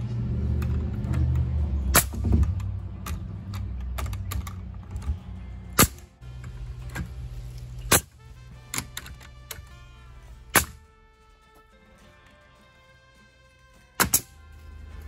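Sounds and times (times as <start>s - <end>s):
nailer firing sharp shots: 1.9s - 2.5s, 5.8s - 6.1s, 7.9s - 8.2s, 10.5s - 10.8s, 14.0s - 14.3s.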